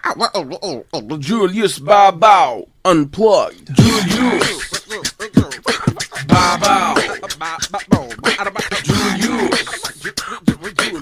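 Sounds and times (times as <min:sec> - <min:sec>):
beatboxed percussion clicks and thumps: 0:03.5 - 0:11.0
voice rhythmically chanting: 0:03.5 - 0:11.0.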